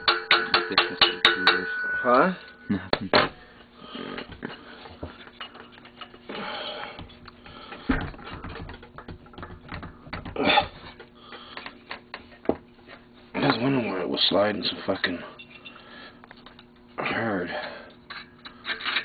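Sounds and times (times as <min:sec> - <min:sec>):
hand tools clicking and tapping: 0:00.0 - 0:03.1, 0:04.2 - 0:12.7.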